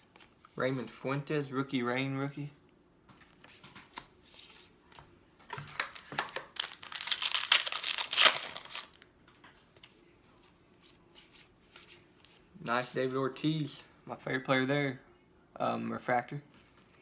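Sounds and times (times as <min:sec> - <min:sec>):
wrapper tearing and crinkling: 0:05.7 - 0:09.0.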